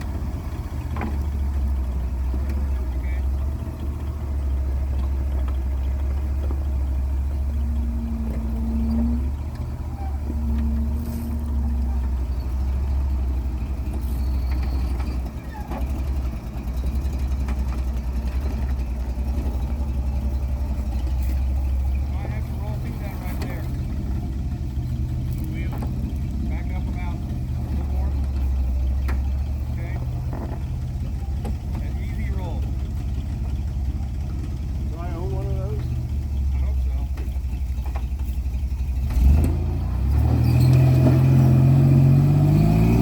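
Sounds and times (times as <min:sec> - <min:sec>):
off-road vehicle engine running: 0:00.0 - 0:43.0.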